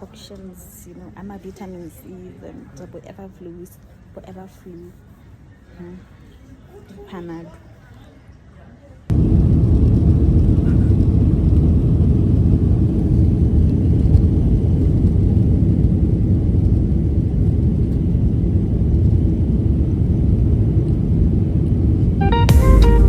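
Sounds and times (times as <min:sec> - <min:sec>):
airliner cabin rumble: 0:09.1 - 0:23.0
music: 0:22.2 - 0:23.0.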